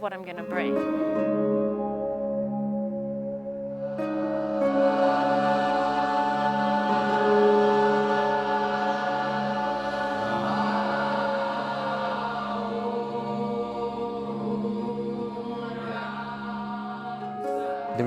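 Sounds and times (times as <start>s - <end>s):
voices chanting held notes: 4.0s - 18.0s.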